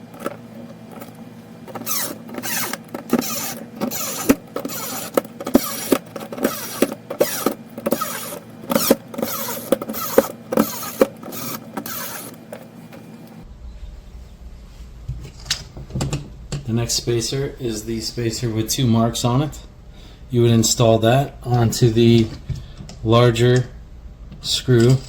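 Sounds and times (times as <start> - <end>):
parts scraping and rattling: 0.0 - 13.4, 24.4 - 25.0.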